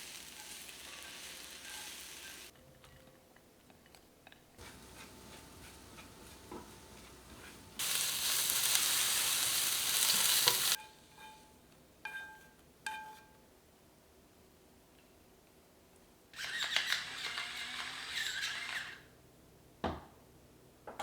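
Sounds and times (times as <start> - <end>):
food sizzling in frying pan: 0.0 - 2.5, 4.6 - 10.8
utensil clinking on cookware: 4.6 - 11.4.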